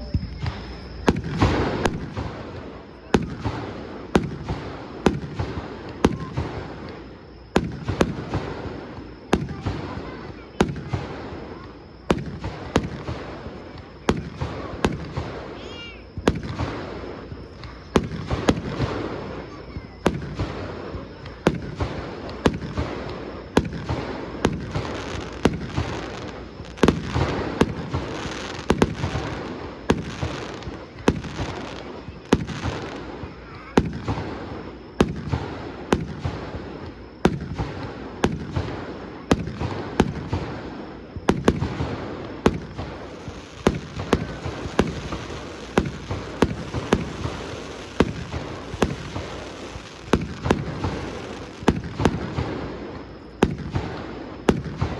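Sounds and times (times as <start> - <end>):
fireworks bursting with echo: 0.0 - 54.9.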